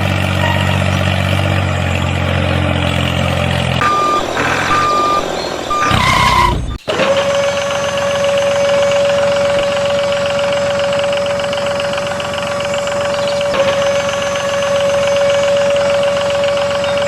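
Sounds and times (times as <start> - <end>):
truck engine humming: 0.0 - 17.0
reversing alarm beeping: 3.8 - 17.0.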